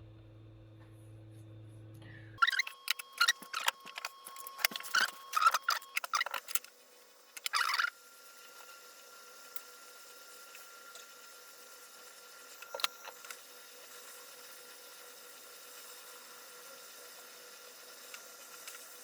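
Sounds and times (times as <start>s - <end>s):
thin high whine: 0.8s - 19.0s.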